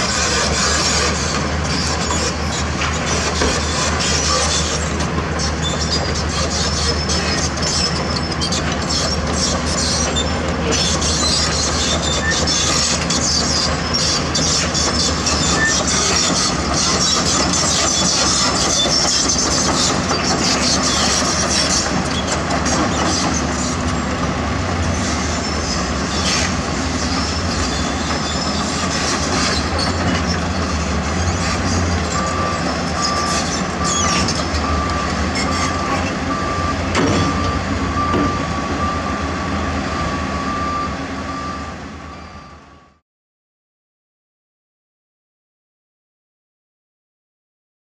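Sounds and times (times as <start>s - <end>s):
steel crawler tracks clanking: 0.0s - 42.4s
heavy diesel machines running: 0.0s - 43.0s
reversing alarm beeping: 32.0s - 43.0s.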